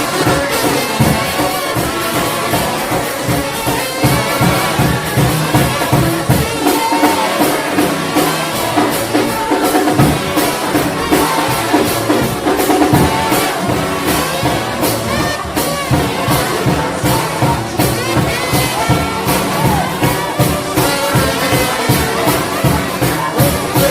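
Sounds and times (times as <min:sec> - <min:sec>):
drum kit beat: 0:00.0 - 0:23.9
trombones playing in harmony: 0:00.0 - 0:23.9.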